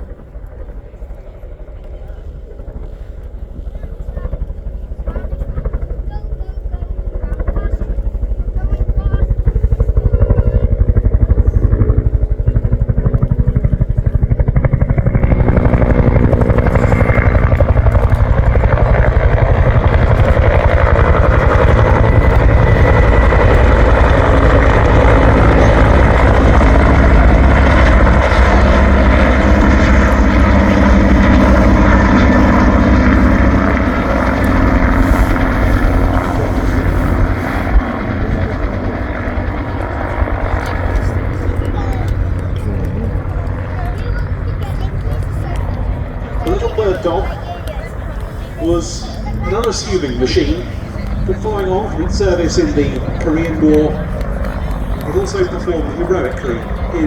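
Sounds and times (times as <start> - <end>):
helicopter rotor beating: 0.0 - 57.0
turbine engine rushing: 0.0 - 57.0.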